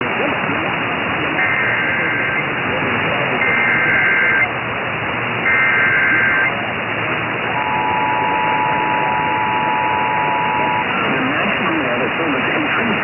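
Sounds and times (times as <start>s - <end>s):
hissy radio broadcast: 0.0s - 13.0s
warbling data tones: 1.2s - 4.6s, 5.4s - 13.0s
two-tone attention signal: 1.4s - 2.5s, 3.3s - 4.5s, 5.4s - 6.6s, 7.4s - 11.2s.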